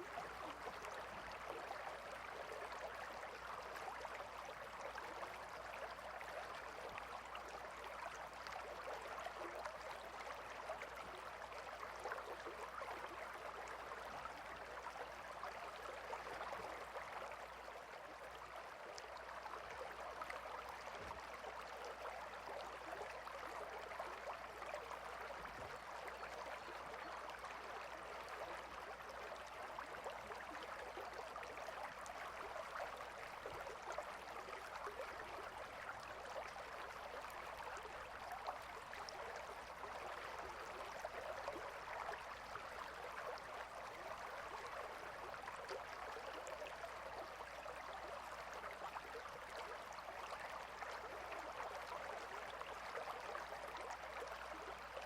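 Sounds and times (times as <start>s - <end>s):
river water flowing: 0.0s - 55.0s.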